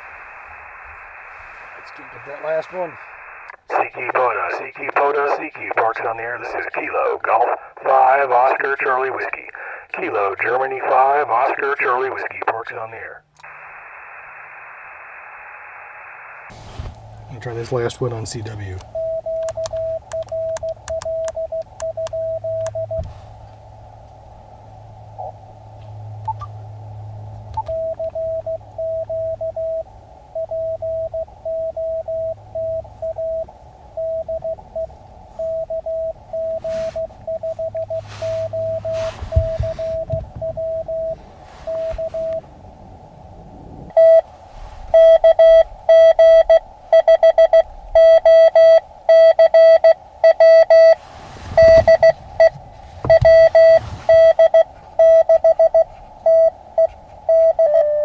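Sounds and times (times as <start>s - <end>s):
morse code beeps: 18.5s - 23.1s, 27.5s - 42.4s, 43.9s - 44.3s, 44.9s - 51.0s, 51.6s - 58.0s.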